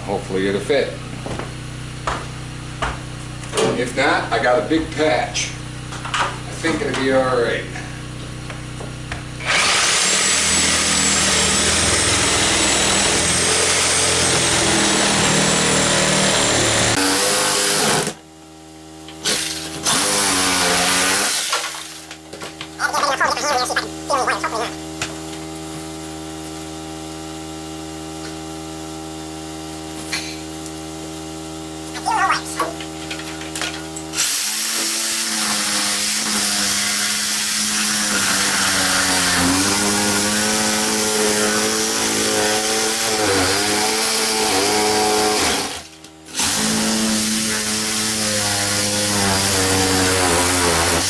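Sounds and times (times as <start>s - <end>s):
power tool cutting wood: 9.4s - 18.2s, 19.3s - 21.8s, 34.2s - 51.0s.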